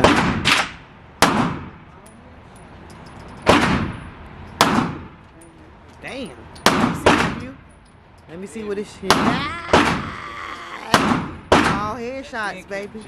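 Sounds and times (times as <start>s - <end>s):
gunshots with echo: 0.0s - 1.8s, 3.4s - 4.0s, 4.6s - 5.2s, 6.7s - 7.4s, 10.9s - 11.9s.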